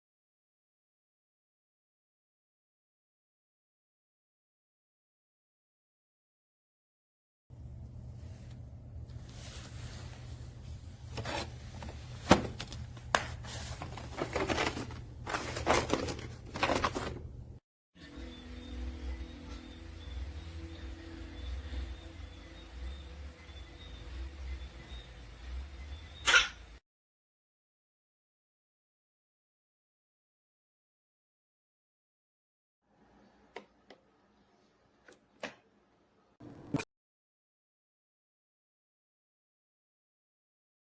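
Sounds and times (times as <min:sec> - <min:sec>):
low steady hum: 0:07.5 - 0:26.2
handling rubbing and scraping: 0:08.2 - 0:17.4.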